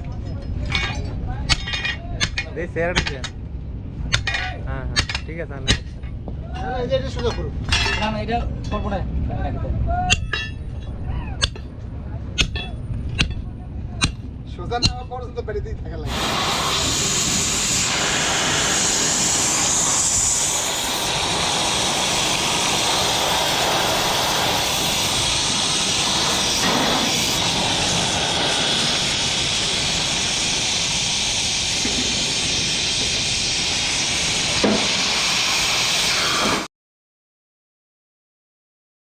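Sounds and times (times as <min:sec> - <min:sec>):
continuous welding hiss: 0:04.1 - 0:08.4, 0:16.1 - 0:36.7.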